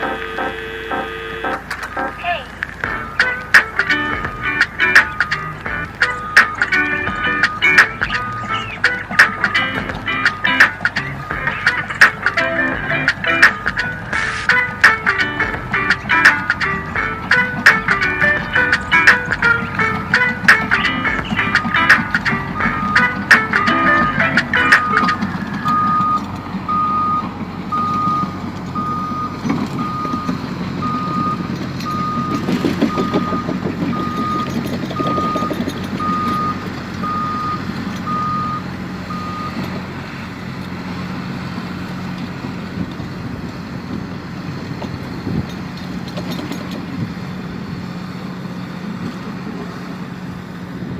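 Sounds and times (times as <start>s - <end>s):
reversing alarm beeping: 0.0s - 2.2s, 5.0s - 9.0s, 10.2s - 11.8s, 17.3s - 40.4s
truck engine running: 0.0s - 50.9s.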